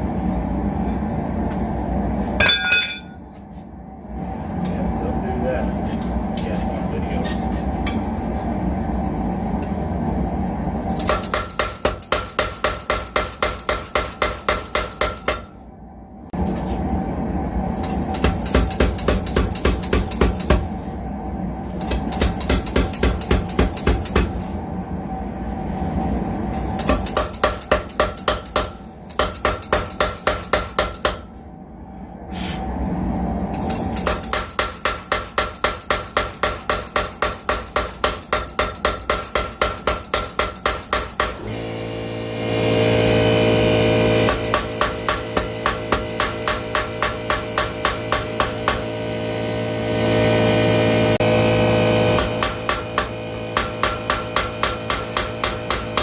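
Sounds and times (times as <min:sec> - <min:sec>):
power hammer striking hot steel: 0:02.4 - 0:03.2, 0:10.9 - 0:15.6, 0:17.8 - 0:20.8, 0:21.8 - 0:24.5, 0:26.7 - 0:31.3, 0:33.7 - 0:41.6, 0:43.8 - 0:56.0
machine running: 0:37.3 - 0:56.0.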